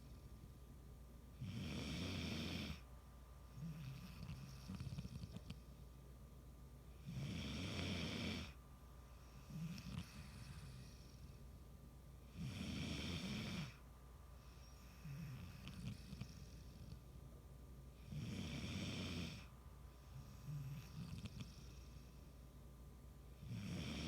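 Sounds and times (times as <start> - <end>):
soft breathing: 0.0 - 0.6, 8.4 - 11.6, 13.5 - 17.2, 19.3 - 22.6.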